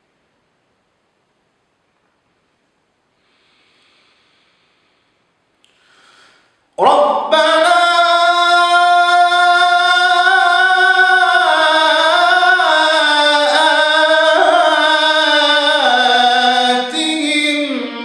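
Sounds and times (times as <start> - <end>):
man reciting a long melodic note: 6.8 - 18.0.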